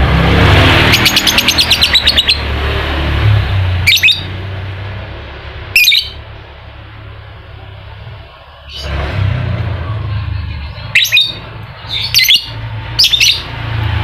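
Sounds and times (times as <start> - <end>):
lovebird chirping: 0.9 - 2.4, 3.8 - 4.3, 5.7 - 6.2, 10.6 - 13.5.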